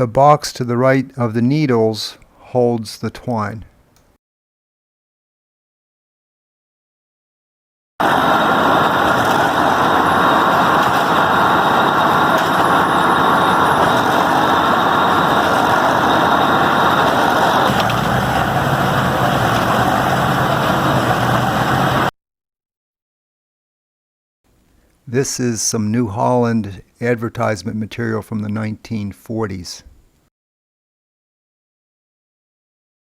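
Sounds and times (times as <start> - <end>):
deep hum: 8.0 - 22.1
hay baler machinery running: 8.0 - 22.1.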